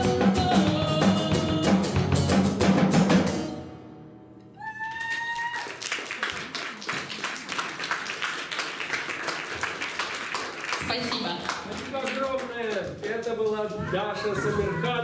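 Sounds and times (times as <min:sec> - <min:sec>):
guitar and drum chord: 0:00.0 - 0:04.1
whistle of approval: 0:04.5 - 0:05.7
audience applauding: 0:04.6 - 0:15.0.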